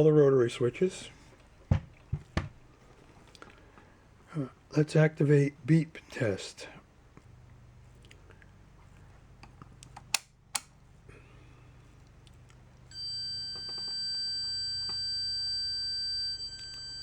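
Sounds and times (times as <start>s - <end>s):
sharp clicks: 9.4s - 10.8s.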